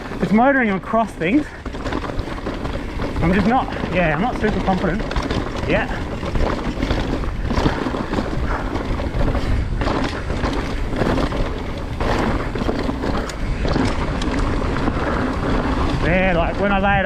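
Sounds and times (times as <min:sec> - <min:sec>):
bike chassis rattle: 0:00.0 - 0:17.0
bike tyre noise: 0:00.0 - 0:17.0
wind buffeting microphone: 0:00.0 - 0:17.0
small knocks from rough ground: 0:01.2 - 0:14.6.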